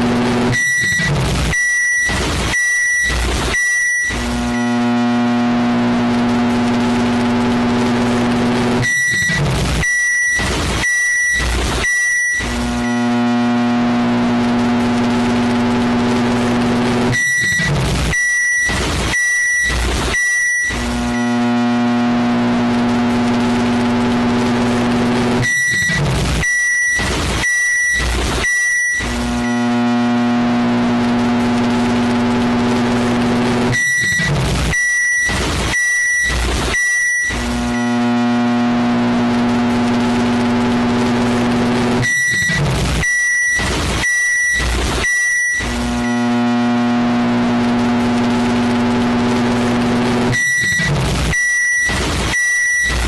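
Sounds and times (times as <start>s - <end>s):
microwave beeps: 0.4s - 4.8s, 8.6s - 13.0s, 16.8s - 21.4s, 25.0s - 29.6s, 33.3s - 38.0s, 40.7s - 46.2s, 49.9s - 53.0s.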